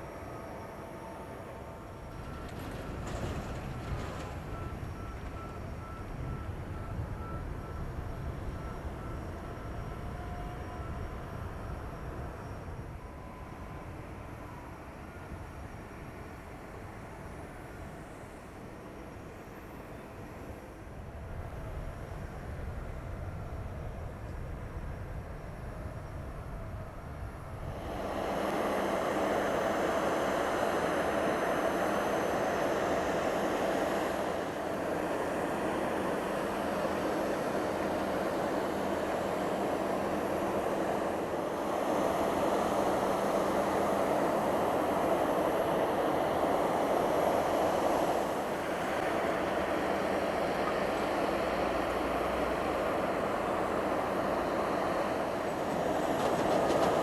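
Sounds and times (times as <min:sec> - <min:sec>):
faint high whine: 0:00.0 - 0:57.0
jet engines running: 0:27.6 - 0:57.0.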